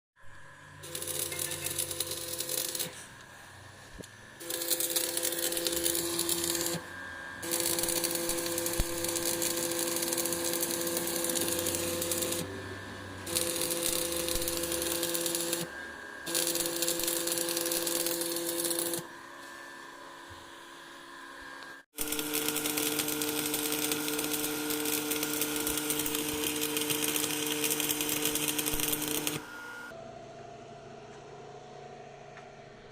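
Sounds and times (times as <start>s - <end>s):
welding arc crackling: 0.8s - 3.0s, 3.9s - 6.8s, 7.4s - 12.5s, 13.2s - 15.7s, 16.3s - 19.0s, 21.9s - 29.4s.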